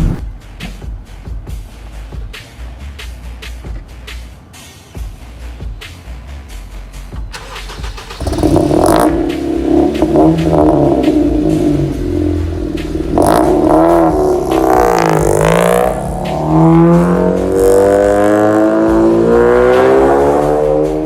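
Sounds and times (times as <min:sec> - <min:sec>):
car engine revving loudly: 0:07.4 - 0:21.0.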